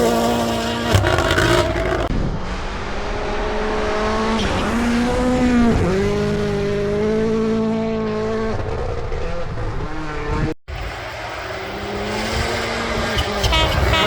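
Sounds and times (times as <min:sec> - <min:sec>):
rally car engine at high revs: 0:00.0 - 0:10.5.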